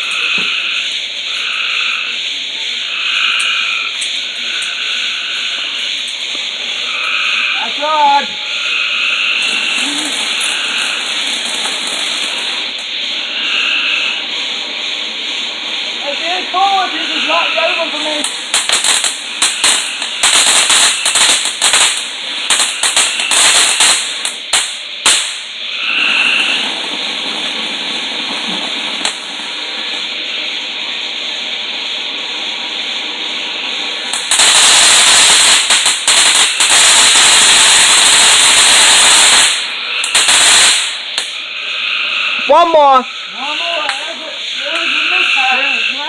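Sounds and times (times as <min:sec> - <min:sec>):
fireworks spraying hiss: 0:00.0 - 0:46.0
fireworks crackling pops: 0:03.4 - 0:04.8, 0:05.8 - 0:06.7, 0:09.4 - 0:13.1, 0:15.3 - 0:41.5, 0:43.6 - 0:45.2.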